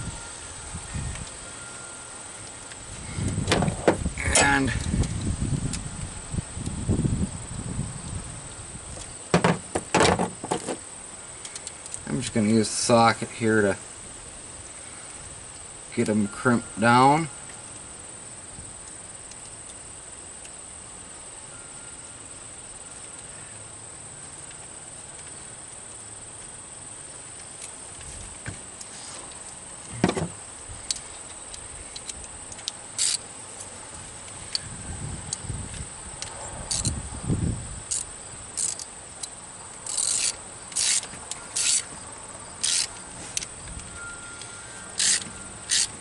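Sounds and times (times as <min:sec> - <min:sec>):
crickets chirring: 0:00.0 - 0:46.0
metal hand tools clicking and scraping: 0:04.2 - 0:05.2, 0:30.8 - 0:33.7, 0:36.2 - 0:37.0, 0:37.9 - 0:42.0, 0:42.6 - 0:46.0.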